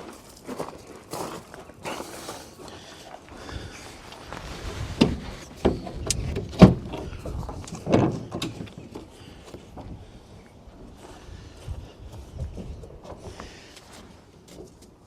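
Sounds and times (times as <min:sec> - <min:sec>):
truck cab knocks and clunks: 0:05.0 - 0:09.1.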